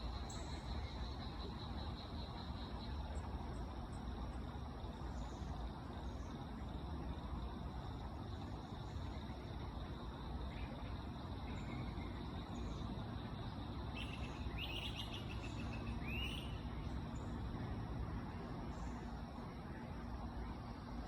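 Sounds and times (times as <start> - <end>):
faint high insect tone: 0.0 - 21.0.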